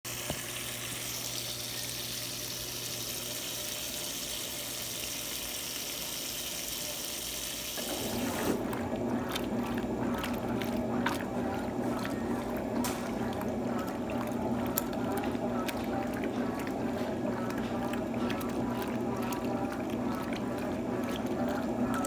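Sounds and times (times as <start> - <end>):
water hissing into washing machine: 0.1 - 22.0
water sloshing with small knocks: 7.8 - 22.0.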